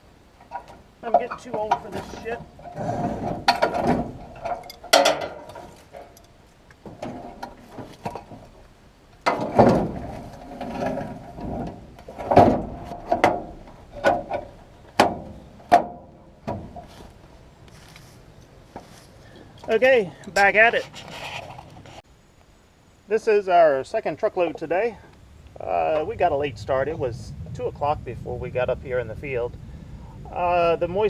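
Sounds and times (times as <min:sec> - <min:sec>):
metal tools clattering: 0:00.4 - 0:06.4.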